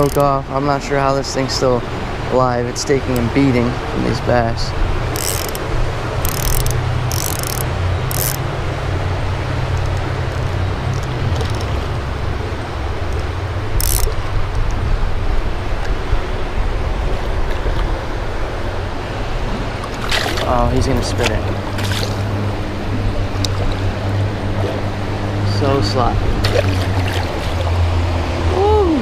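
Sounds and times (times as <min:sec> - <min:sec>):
fishing reel drag giving line: 0:00.0 - 0:00.3, 0:05.1 - 0:08.5, 0:13.7 - 0:14.3.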